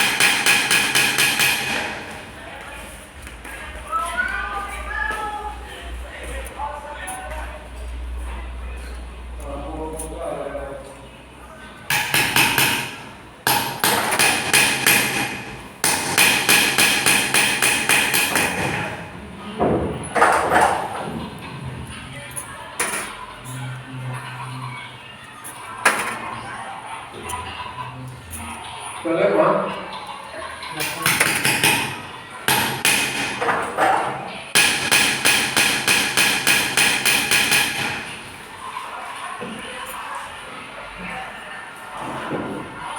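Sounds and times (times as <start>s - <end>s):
hammer ringing on metal: 0.0s - 1.9s, 11.9s - 19.0s, 30.8s - 33.4s, 34.6s - 38.1s.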